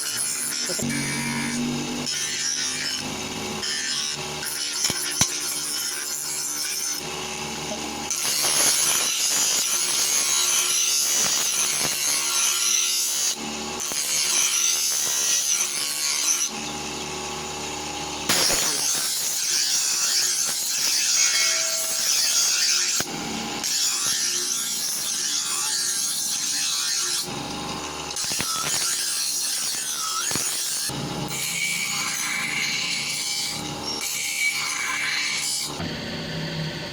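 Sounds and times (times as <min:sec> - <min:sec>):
knife blade grinding on abrasive: 0:18.3 - 0:27.0.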